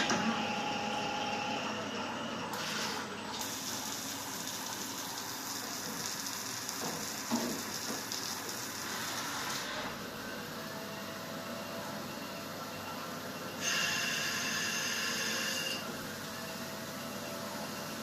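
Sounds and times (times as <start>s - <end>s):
lathe machine noise: 13.6s - 15.9s.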